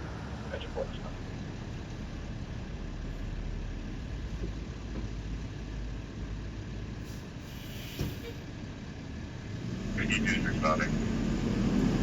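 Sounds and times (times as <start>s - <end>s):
vehicle engine idling: 0.0s - 11.0s
short hiss: 7.1s - 8.4s.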